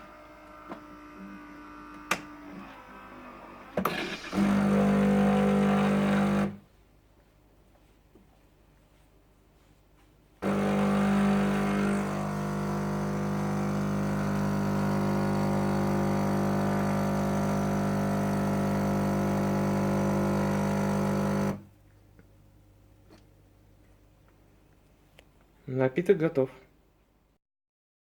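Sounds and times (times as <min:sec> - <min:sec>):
coffee machine pump humming: 0:00.0 - 0:06.6, 0:10.4 - 0:21.7.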